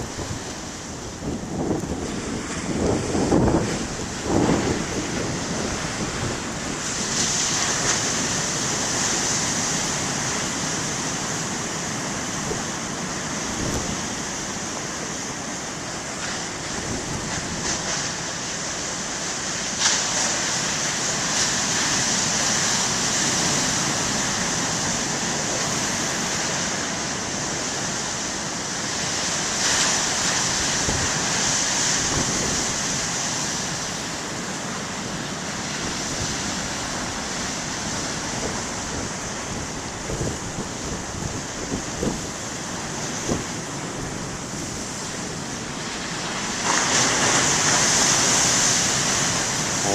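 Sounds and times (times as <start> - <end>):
wind buffeting microphone: 0.0 - 14.6, 16.6 - 18.0, 30.5 - 33.2, 35.6 - 49.9
ocean surf breaking: 0.0 - 49.9.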